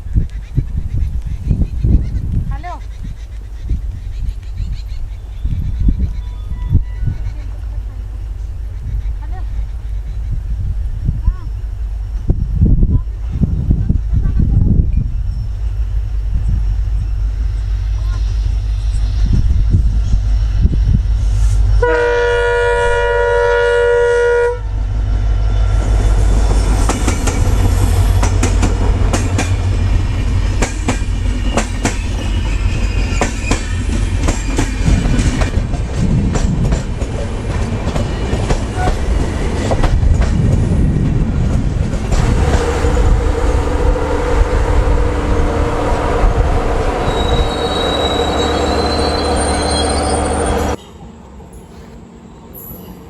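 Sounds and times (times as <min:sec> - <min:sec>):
train passing with rumble: 0:00.0 - 0:53.0
train wheel squeal: 0:04.6 - 0:10.4, 0:14.4 - 0:22.0, 0:25.4 - 0:35.6, 0:42.5 - 0:53.0
locomotive horn: 0:21.8 - 0:24.8, 0:42.2 - 0:51.2
wheels clacking over rail joints: 0:25.9 - 0:43.4.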